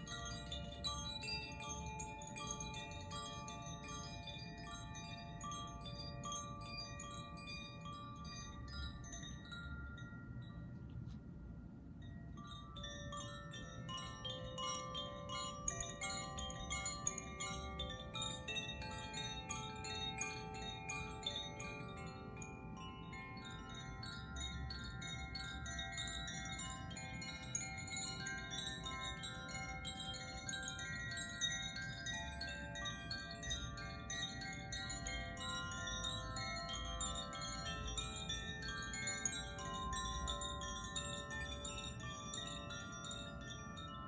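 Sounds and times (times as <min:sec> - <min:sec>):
tinkling chimes: 0:00.0 - 0:44.0.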